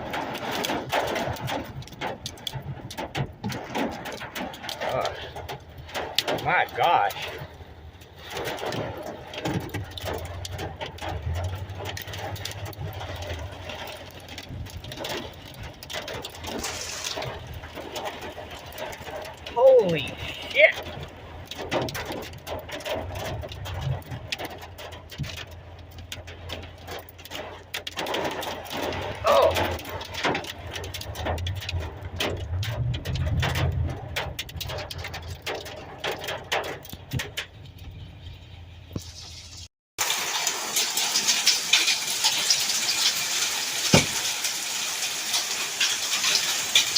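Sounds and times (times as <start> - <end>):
hailstones pelting a surface: 0.0 - 37.8, 40.0 - 46.9
steady low rumble: 5.2 - 27.7, 28.4 - 39.0.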